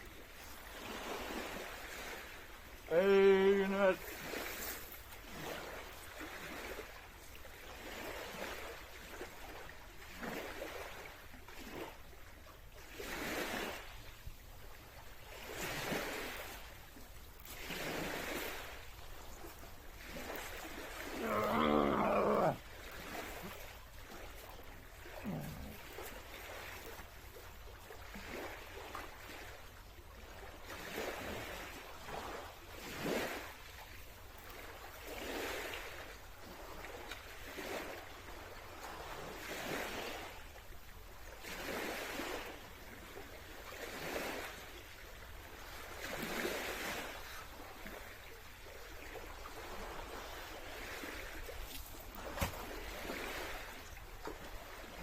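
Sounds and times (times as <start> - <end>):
man roaring: 2.9 - 4.0, 21.0 - 22.6, 25.1 - 25.8.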